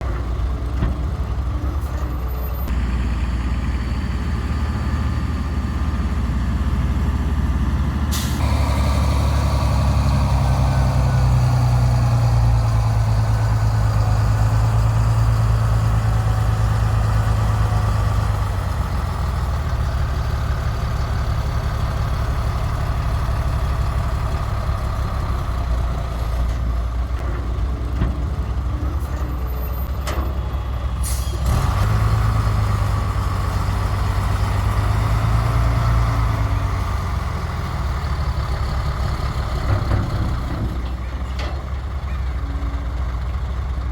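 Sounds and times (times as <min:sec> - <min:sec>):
heavy diesel engines running: 0:00.0 - 0:43.9
engine revving under load: 0:04.1 - 0:19.6, 0:31.0 - 0:40.5.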